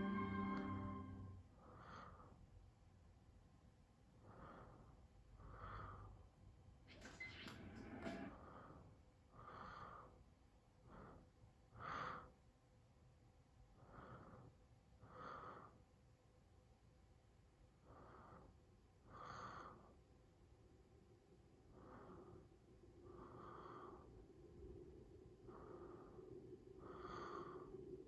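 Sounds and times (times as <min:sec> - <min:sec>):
faint breathing puffs: 0:04.2 - 0:06.4, 0:07.8 - 0:12.4, 0:13.7 - 0:15.9, 0:17.8 - 0:20.2, 0:21.6 - 0:28.0.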